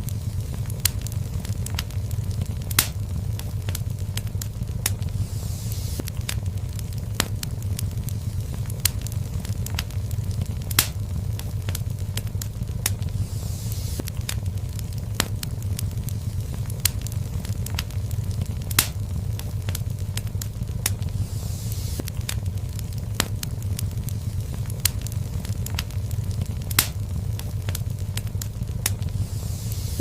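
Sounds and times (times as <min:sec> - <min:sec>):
loud wood snaps: 0:00.0 - 0:05.1, 0:06.0 - 0:13.1, 0:14.0 - 0:21.1, 0:21.7 - 0:29.1
fire crackling and popping: 0:00.0 - 0:30.0
low rumble of flames: 0:00.0 - 0:30.0.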